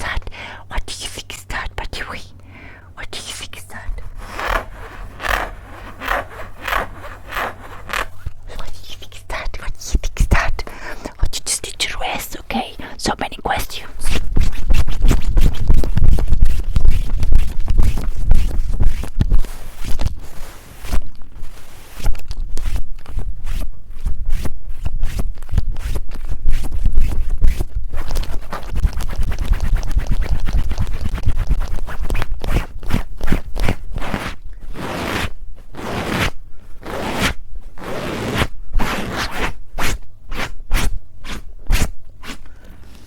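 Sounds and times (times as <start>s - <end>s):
scratching on microphones: 3.2s - 12.6s, 13.4s - 42.4s
handling rumble: 3.8s - 8.5s.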